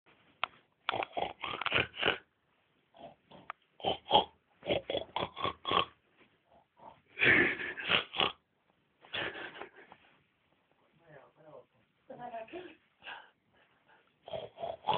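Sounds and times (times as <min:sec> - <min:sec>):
person snoring in rattling snorts: 0:00.9 - 0:02.3, 0:03.0 - 0:06.0, 0:07.3 - 0:08.4, 0:14.2 - 0:14.9.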